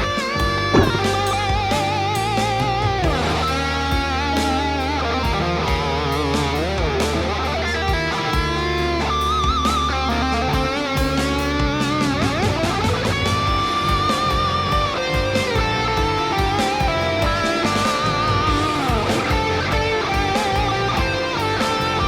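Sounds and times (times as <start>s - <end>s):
electric guitar with vibrato: 0.0s - 22.0s
sustained low bass notes: 0.5s - 4.3s.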